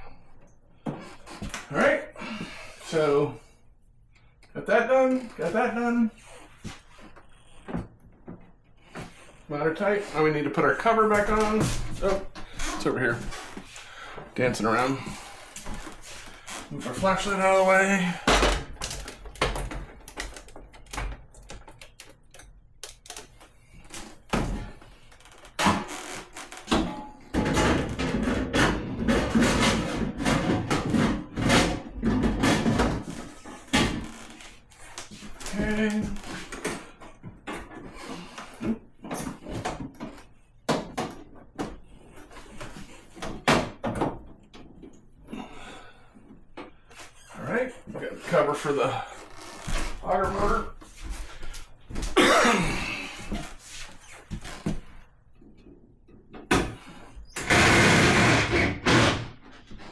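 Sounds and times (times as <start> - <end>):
plastic parts knocking and clattering: 17.0 - 25.9, 26.6 - 34.2, 35.0 - 45.0
parts clicking and knocking: 18.3 - 24.6.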